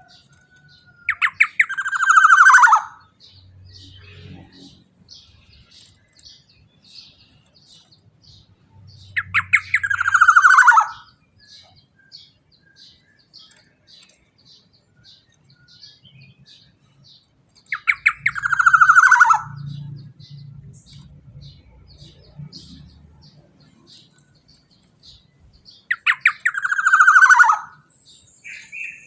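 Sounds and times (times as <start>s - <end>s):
bird harsh call bursts: 1.1s - 3.0s, 9.2s - 11.1s, 17.7s - 19.6s, 25.9s - 29.0s
faint high chirp: 17.7s - 20.0s.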